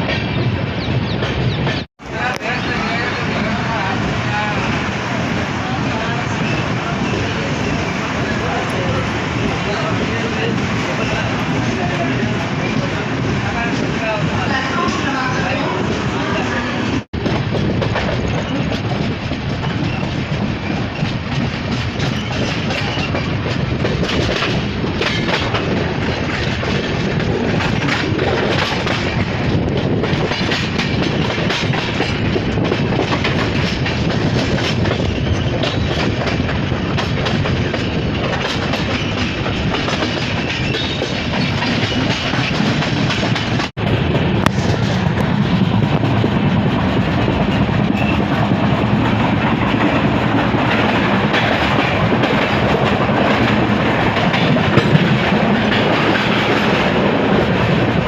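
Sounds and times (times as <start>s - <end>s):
electric train rumbling: 0.0s - 58.0s
wheels clattering over rails: 17.1s - 43.8s, 44.4s - 58.0s.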